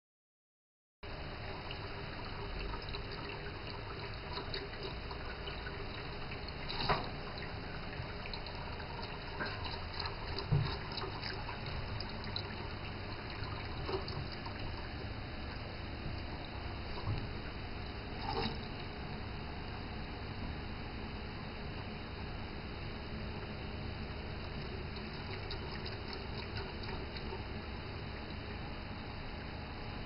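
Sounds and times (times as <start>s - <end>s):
faucet running into sink: 1.5s - 15.1s, 24.5s - 27.5s
water splashing and dripping: 1.8s - 19.0s, 24.4s - 27.5s.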